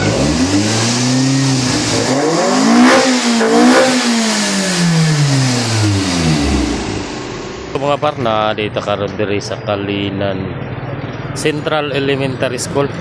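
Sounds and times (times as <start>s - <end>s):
car engine revving: 0.0s - 8.7s.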